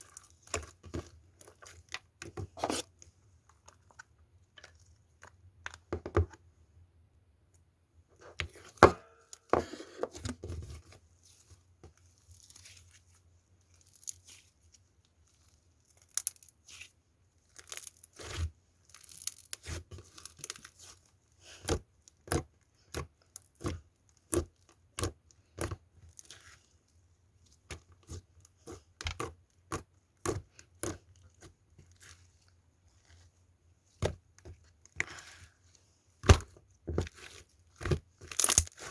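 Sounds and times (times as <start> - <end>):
slime popping and crackling: 36.2 - 38.9
slime sticky tearing: 37.1 - 38.9.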